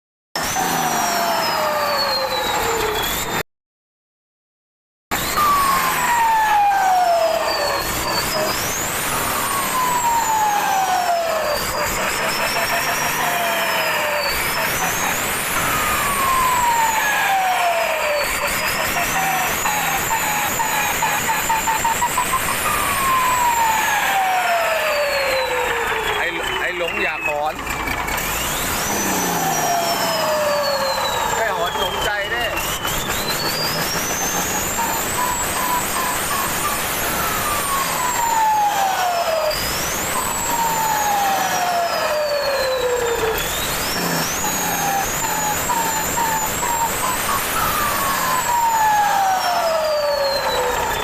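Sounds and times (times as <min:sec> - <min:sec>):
diesel turbo whistling and hissing: 0:00.4 - 0:03.4, 0:05.1 - 0:51.0.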